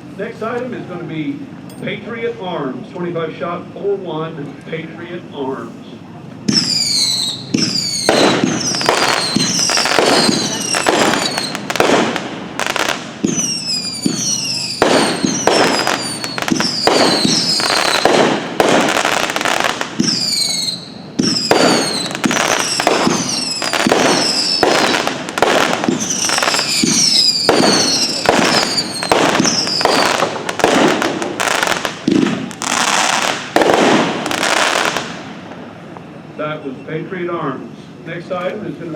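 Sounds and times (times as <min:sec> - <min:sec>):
firework bangs: 0:06.4 - 0:35.8
falling firework whistles: 0:06.5 - 0:35.3.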